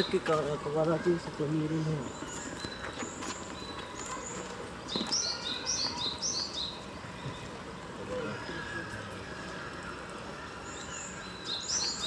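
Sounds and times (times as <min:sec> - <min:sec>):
small bird chirping: 0:00.0 - 0:07.5, 0:10.6 - 0:12.0.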